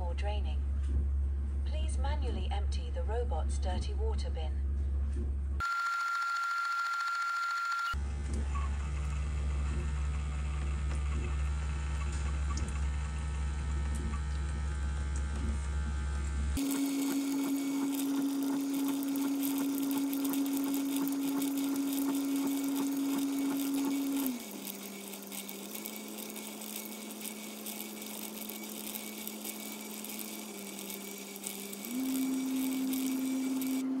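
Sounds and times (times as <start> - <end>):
low hum: 0.0 - 5.6
drain pump motor whine: 5.6 - 34.0.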